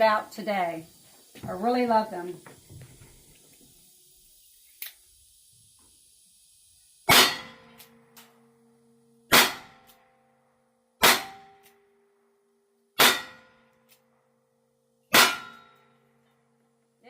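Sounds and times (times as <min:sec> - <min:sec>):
pistol shots with metallic ring: 0:07.1 - 0:08.5, 0:09.3 - 0:10.3, 0:11.0 - 0:11.8, 0:13.0 - 0:13.7, 0:15.1 - 0:15.9.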